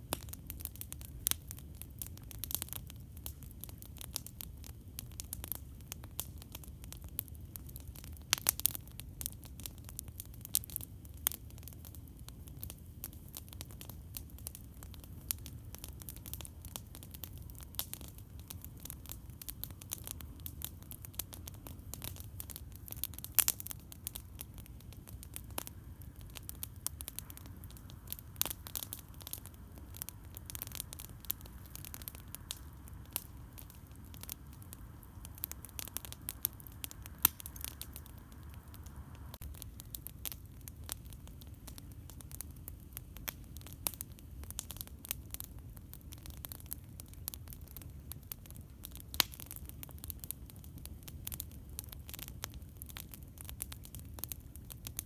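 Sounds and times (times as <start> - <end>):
campfire crackling: 0.0 - 55.0
low steady rumble: 24.2 - 39.8.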